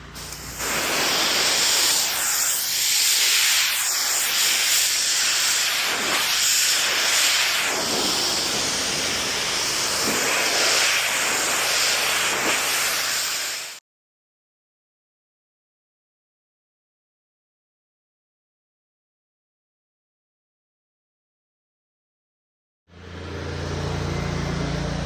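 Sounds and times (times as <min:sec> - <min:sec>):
pressure washer spray hissing: 0:00.0 - 0:13.8.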